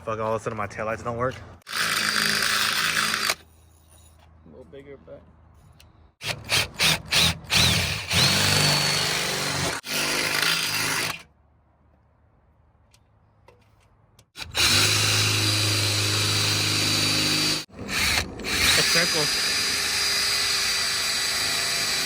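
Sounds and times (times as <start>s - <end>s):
power drill whining: 6.2s - 11.2s, 14.4s - 22.0s.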